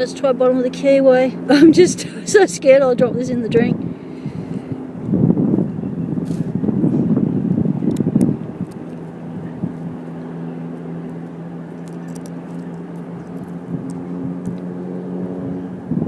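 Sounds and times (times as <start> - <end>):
engine running steadily: 0.0 - 16.0
wind gust on microphone: 3.0 - 10.5, 13.1 - 16.0.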